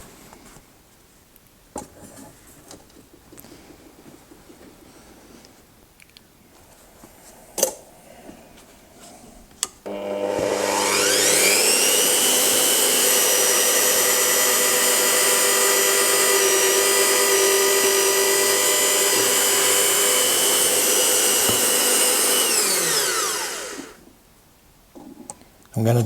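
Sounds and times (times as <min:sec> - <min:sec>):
drill spinning down: 0:09.9 - 0:24.0
electric drill drilling steel: 0:09.9 - 0:24.0.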